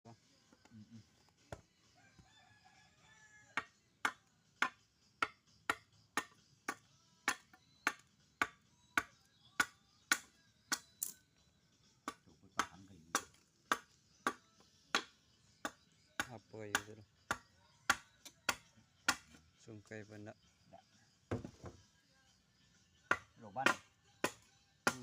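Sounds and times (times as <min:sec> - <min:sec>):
wood being chopped: 0:01.5 - 0:01.7, 0:03.6 - 0:11.1, 0:12.0 - 0:19.4, 0:21.3 - 0:21.8, 0:23.1 - 0:25.0.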